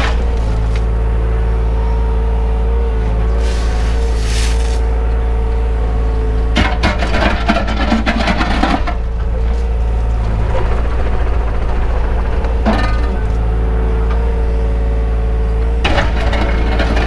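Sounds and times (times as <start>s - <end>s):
excavator diesel engine running: 0.0s - 17.0s
clattering and scraping: 3.3s - 4.9s, 6.6s - 10.8s, 15.8s - 17.0s.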